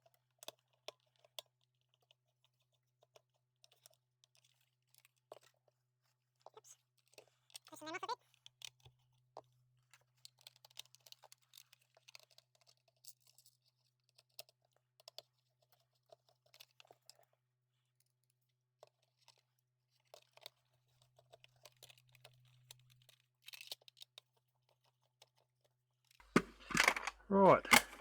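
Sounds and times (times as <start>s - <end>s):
plastic clicks and taps: 26.3s - 28.0s.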